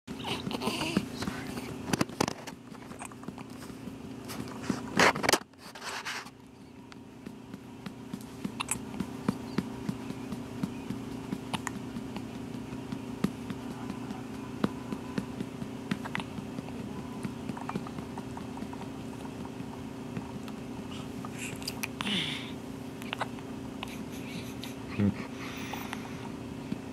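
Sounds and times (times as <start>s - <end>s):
steady low hum: 0.1s - 26.9s
hiccups: 8.6s - 8.8s.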